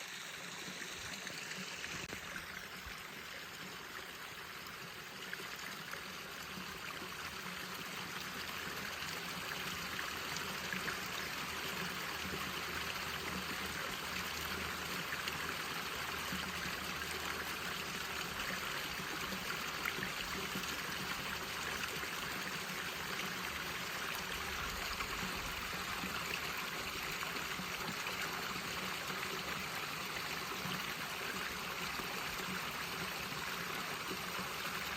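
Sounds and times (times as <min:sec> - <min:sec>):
stream water splashing: 0:00.0 - 0:34.9.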